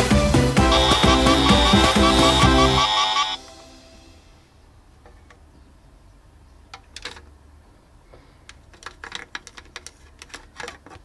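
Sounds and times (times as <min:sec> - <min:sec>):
small hard objects clicking: 0:08.5 - 0:11.0.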